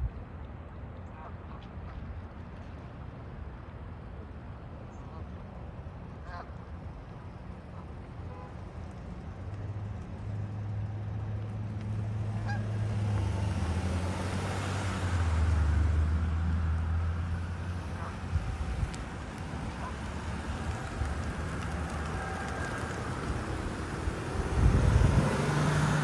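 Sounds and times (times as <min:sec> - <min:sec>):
motor drone of passing vehicle: 0:07.7 - 0:26.0.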